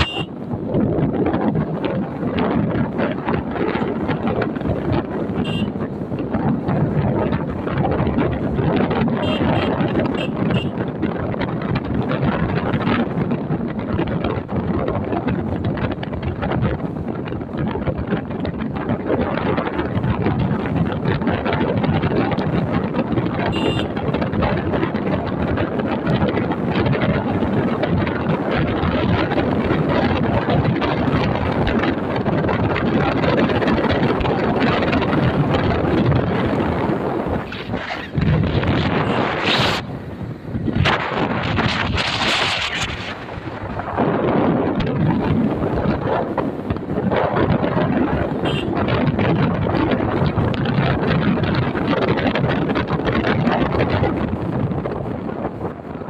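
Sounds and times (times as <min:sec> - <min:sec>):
wind buffeting microphone: 0:00.0 - 0:56.0
motorcycle engine running: 0:21.7 - 0:51.0.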